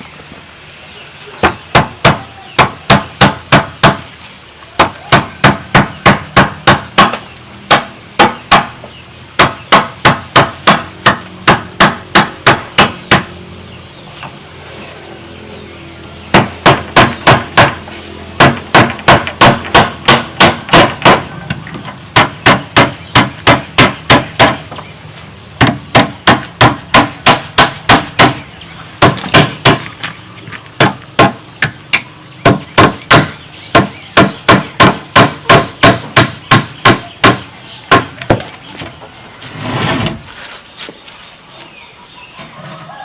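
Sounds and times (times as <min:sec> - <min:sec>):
hammer striking: 0:01.4 - 0:04.1, 0:04.8 - 0:08.8, 0:09.4 - 0:13.3, 0:16.3 - 0:24.8, 0:25.6 - 0:28.4, 0:29.0 - 0:29.9, 0:30.8 - 0:38.4.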